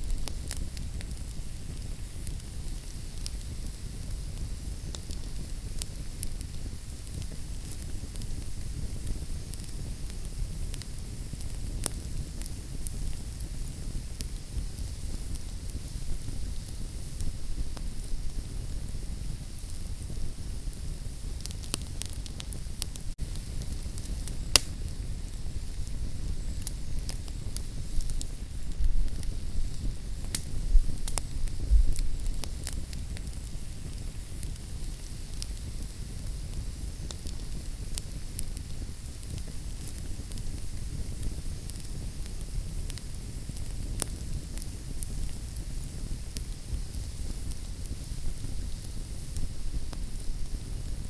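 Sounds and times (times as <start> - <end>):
fireplace fire crackling and popping: 0.0 - 51.0
steady low rumble: 23.0 - 34.0.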